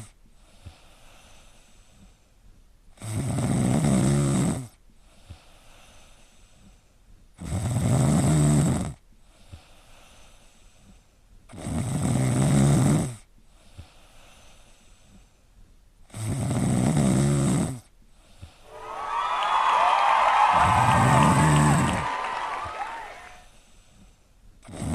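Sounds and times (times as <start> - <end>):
pet snoring: 3.0 - 4.7, 7.4 - 9.0, 11.5 - 13.2, 16.1 - 17.9, 24.7 - 24.9
cheering: 18.7 - 23.4.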